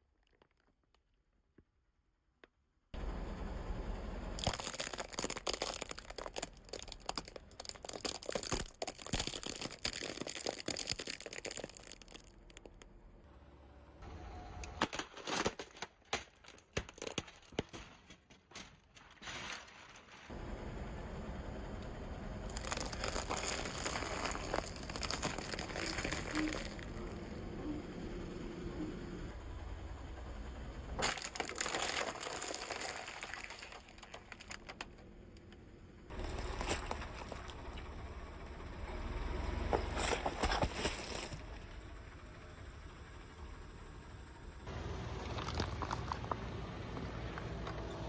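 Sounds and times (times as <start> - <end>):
objects cracking under tyre: 0.0 - 1.7, 4.4 - 13.0, 14.4 - 20.4, 22.5 - 28.0, 31.0 - 38.1, 39.5 - 41.9, 44.6 - 48.0
low steady rumble: 3.0 - 15.0, 20.3 - 48.0.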